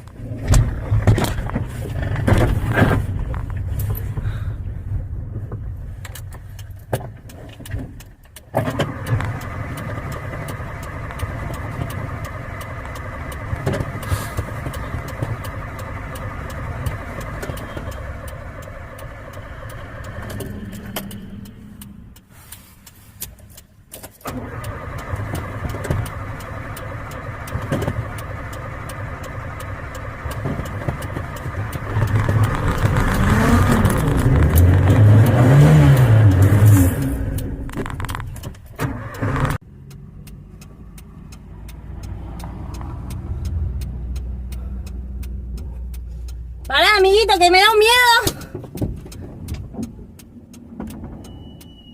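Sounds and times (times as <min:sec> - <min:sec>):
car engine cranking on starter: 0:06.1 - 0:51.9
car engine revving: 0:08.6 - 0:22.2, 0:24.2 - 0:47.8.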